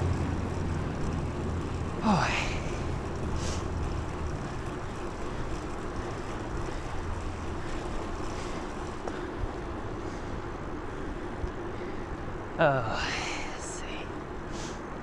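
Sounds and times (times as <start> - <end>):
bicycle road noise: 0.0 - 15.0
faint steady hum: 0.0 - 15.0.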